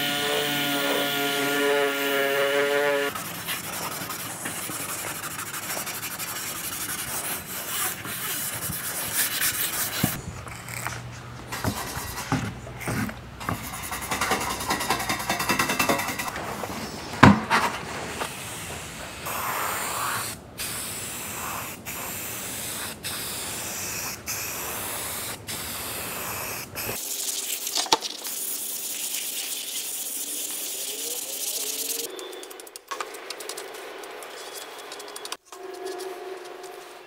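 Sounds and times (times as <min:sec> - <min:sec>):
paint spray gun hissing: 0:18.2 - 0:32.1.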